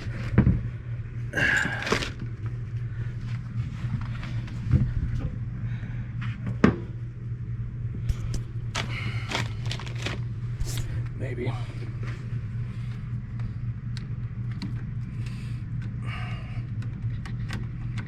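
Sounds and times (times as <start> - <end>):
steady low hum: 0.0 - 18.0
screwdriver clicking and scraping: 8.1 - 8.7, 10.6 - 11.1.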